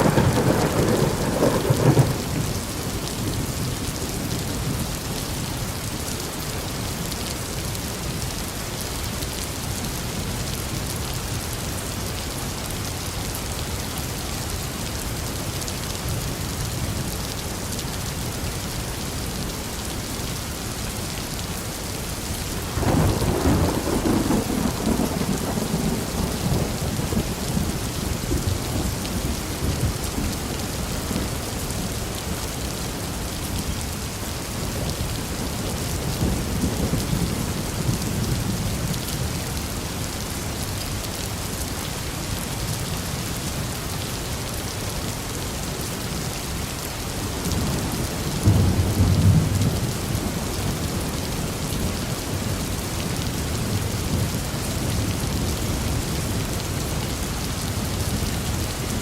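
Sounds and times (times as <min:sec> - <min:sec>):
thunder rumbling: 0:00.0 - 0:03.6, 0:22.6 - 0:30.4
steady rain falling: 0:00.0 - 0:59.0.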